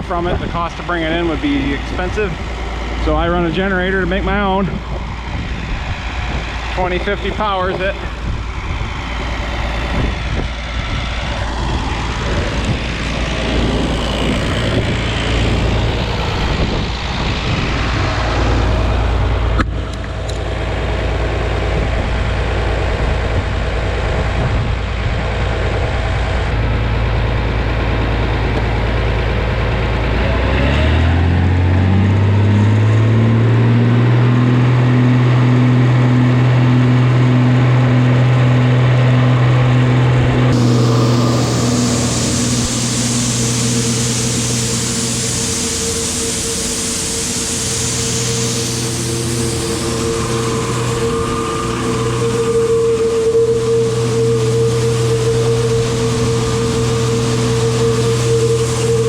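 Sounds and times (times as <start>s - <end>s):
generator hum rising in pitch: 0.0s - 59.0s
tractor engine rumbling: 0.0s - 59.0s.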